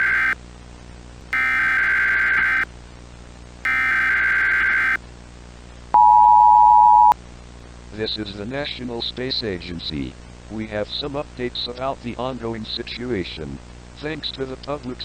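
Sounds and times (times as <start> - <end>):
buzzy digital data bursts: 0.0 - 0.4, 1.4 - 2.6, 3.7 - 5.0
two-tone attention signal: 0.0 - 0.4, 1.4 - 2.6, 3.7 - 5.0.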